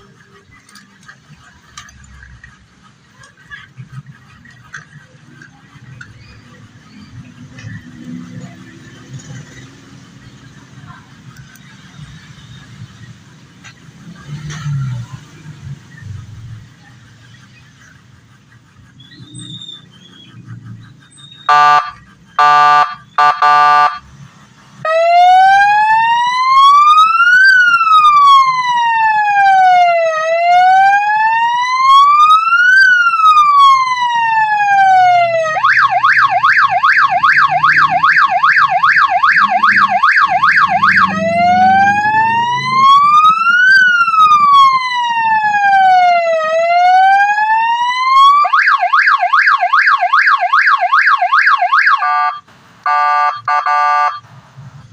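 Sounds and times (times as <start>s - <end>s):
siren rapid yelp: 18.9s - 24.1s, 24.8s - 54.2s
siren slow wail: 21.3s - 24.1s, 24.8s - 54.3s
siren horn blasts: 21.4s - 24.1s, 24.9s - 54.2s.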